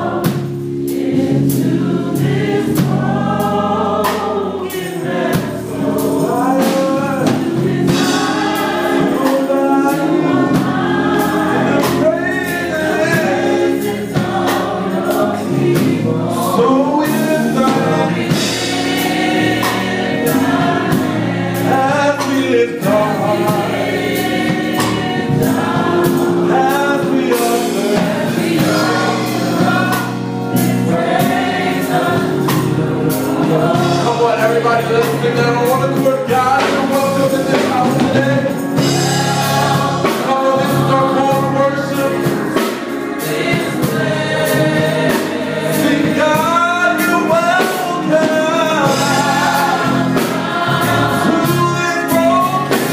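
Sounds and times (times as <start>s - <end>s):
band accompaniment: 0.0s - 52.9s
gospel choir singing: 0.0s - 52.9s.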